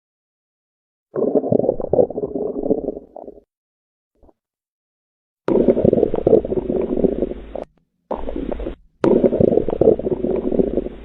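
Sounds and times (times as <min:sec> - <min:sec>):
bowel sounds gurgling: 0:01.1 - 0:03.5, 0:05.5 - 0:11.0.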